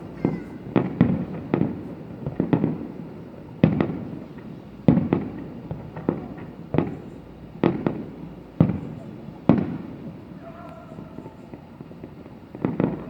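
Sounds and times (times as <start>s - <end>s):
echo of booms: 0.0s - 2.9s
fireworks booming: 0.0s - 13.0s.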